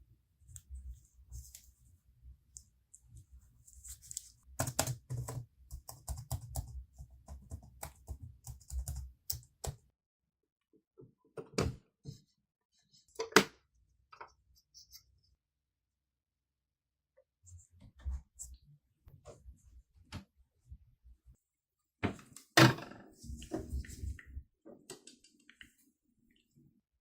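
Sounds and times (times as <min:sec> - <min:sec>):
clicks and taps on laptop: 0:04.6 - 0:09.8.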